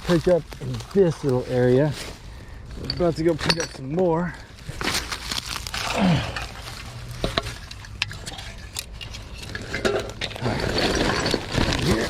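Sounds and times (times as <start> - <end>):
glass bottles clinking: 2.8 - 3.9, 7.2 - 12.0.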